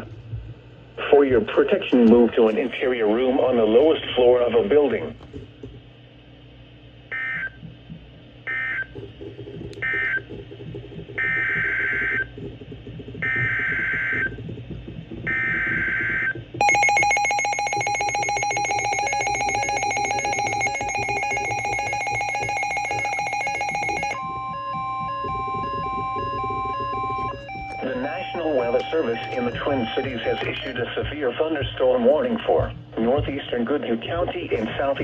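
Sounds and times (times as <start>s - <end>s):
warbling digital header bursts: 15.3s - 30.8s
digital data bursts: 15.3s - 32.0s
harsh two-tone attention signal: 16.6s - 30.9s.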